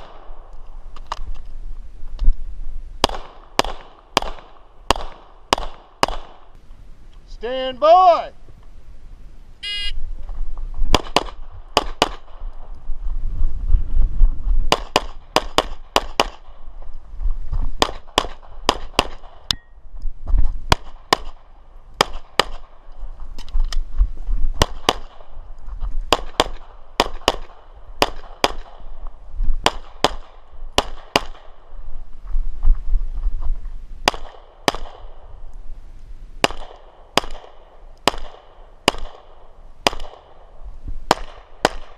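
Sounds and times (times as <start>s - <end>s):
pistol shots: 3.0s - 6.5s, 10.9s - 12.4s, 14.7s - 16.5s, 17.8s - 19.4s, 20.7s - 22.8s, 24.6s - 25.3s, 26.1s - 28.9s, 29.6s - 31.6s, 34.0s - 35.2s, 36.4s - 40.5s, 41.1s - 41.9s.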